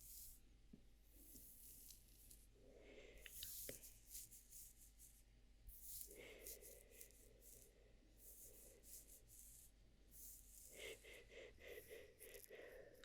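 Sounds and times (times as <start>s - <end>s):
soft brushing of hair: 0.0s - 0.4s, 3.3s - 13.0s.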